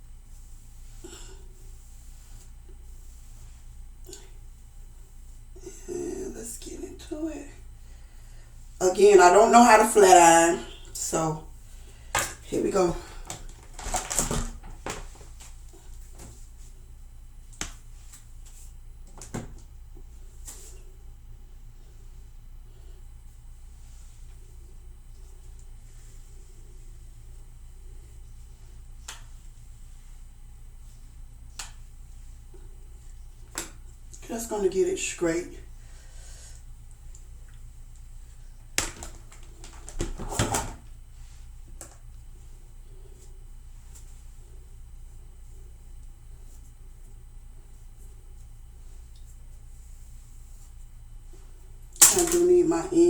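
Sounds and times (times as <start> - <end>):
faint low hum: 0.0 - 53.0.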